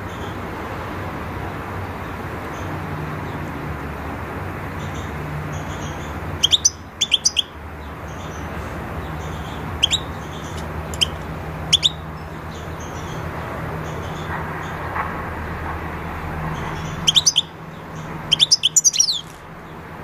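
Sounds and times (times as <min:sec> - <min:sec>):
goldfinch chirping: 0:04.9 - 0:13.2, 0:16.6 - 0:19.4.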